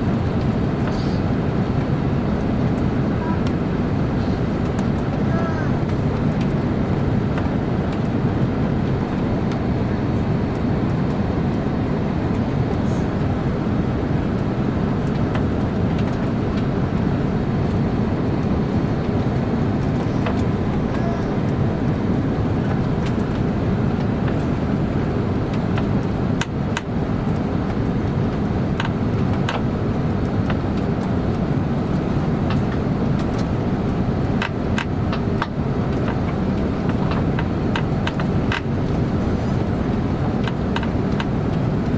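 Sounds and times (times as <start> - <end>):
airplane cabin engine rumble: 0.0 - 41.9.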